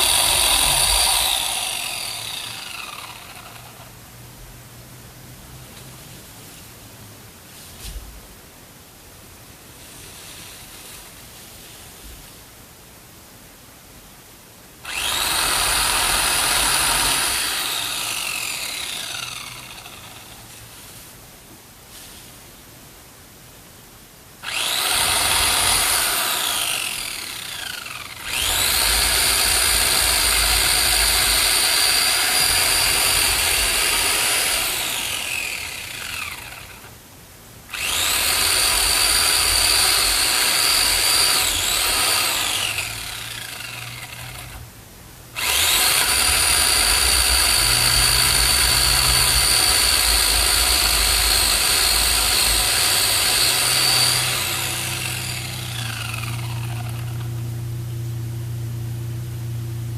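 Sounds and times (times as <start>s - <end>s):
electric chainsaw cutting wood: 0.0s - 3.9s, 14.8s - 20.6s, 24.4s - 37.0s, 37.7s - 44.7s, 45.4s - 57.7s.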